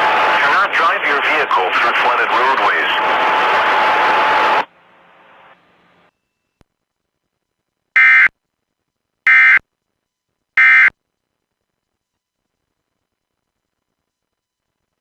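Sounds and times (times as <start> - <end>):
short buzzing data bursts: 10.6 - 10.9.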